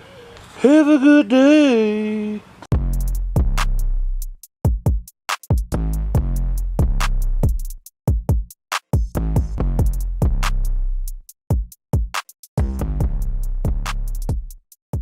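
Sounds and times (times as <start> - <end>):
drum machine beat: 2.7 - 15.0.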